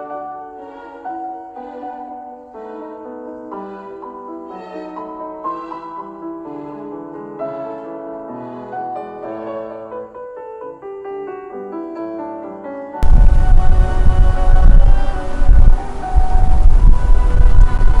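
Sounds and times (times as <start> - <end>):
piano music: 0.0 - 18.0
loud low rumbling: 13.0 - 18.0.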